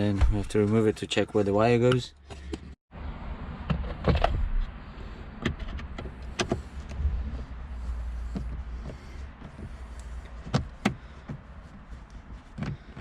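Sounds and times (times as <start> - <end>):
low steady rumble: 3.0 - 12.9.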